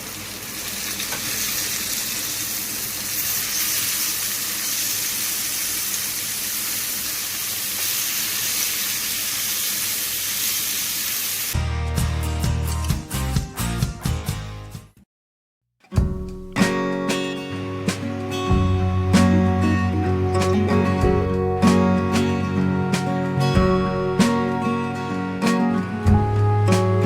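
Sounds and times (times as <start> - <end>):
chicken sizzling in a pan: 0.0 - 11.6
acoustic guitar music: 11.6 - 15.0, 15.8 - 27.0.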